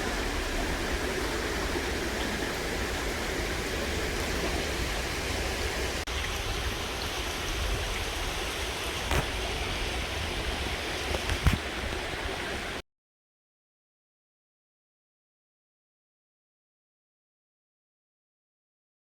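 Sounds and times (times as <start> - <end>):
river flowing: 0.0 - 12.8.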